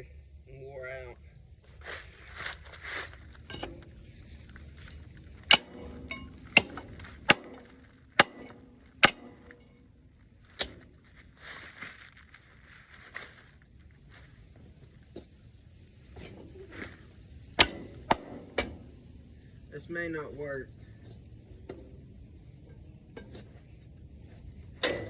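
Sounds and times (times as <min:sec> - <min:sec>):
soft metal scraping: 0:01.7 - 0:14.9
steel bar clanking on pistons: 0:05.4 - 0:09.8, 0:17.6 - 0:18.8, 0:24.8 - 0:25.0.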